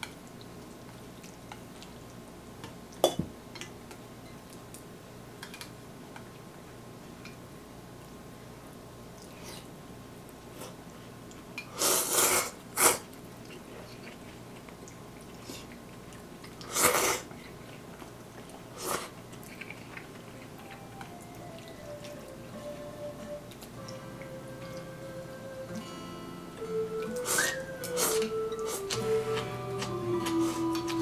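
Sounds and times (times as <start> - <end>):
noodle slurping: 11.7 - 13.1, 16.6 - 20.5, 27.1 - 29.4.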